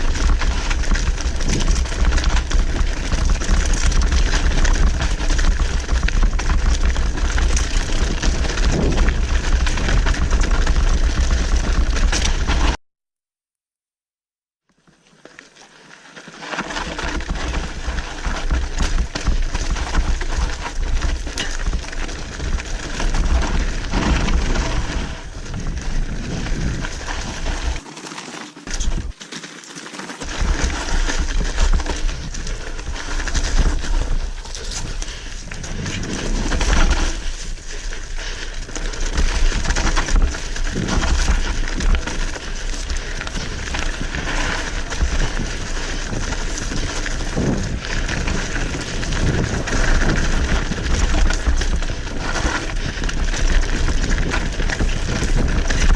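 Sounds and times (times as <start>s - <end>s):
wind rumble on microphone: 0.0s - 12.7s, 17.9s - 27.8s, 38.9s - 55.9s
bike knocking and rattling: 0.0s - 12.8s, 15.5s - 55.9s
bike tyres on dirt: 0.0s - 12.8s, 14.8s - 55.9s.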